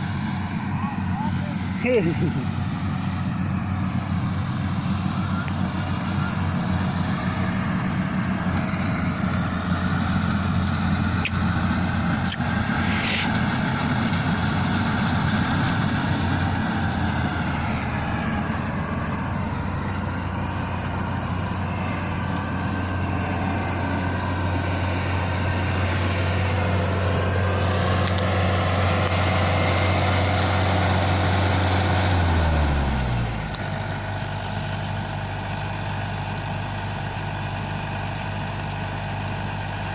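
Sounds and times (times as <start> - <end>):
combine harvester engine running: 0.0 - 39.9
brief hiss: 12.8 - 13.3.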